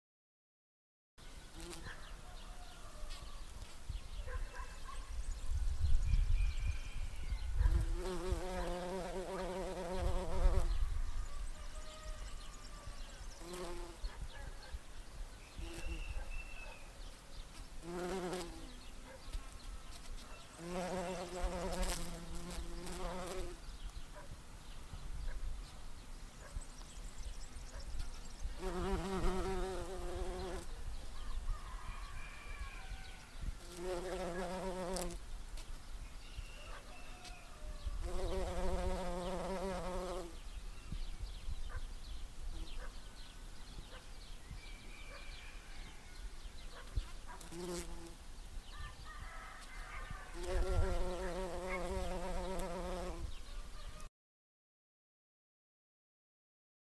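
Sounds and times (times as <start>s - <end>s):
bee wings buzzing: 7.7s - 10.7s, 17.6s - 18.8s, 19.9s - 23.6s, 28.0s - 30.8s, 33.6s - 35.7s, 38.0s - 40.4s, 46.8s - 48.2s, 50.3s - 53.3s.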